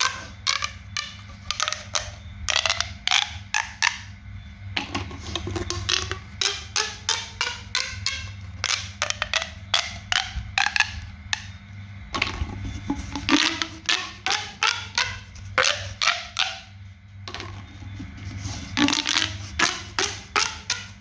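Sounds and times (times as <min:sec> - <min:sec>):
toy clicks and pops: 0:00.0 - 0:04.1, 0:05.4 - 0:11.5, 0:18.8 - 0:21.0.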